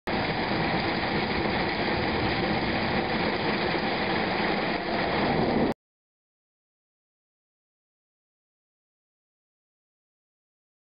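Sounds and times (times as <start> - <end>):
steady rushing noise: 0.1 - 5.8.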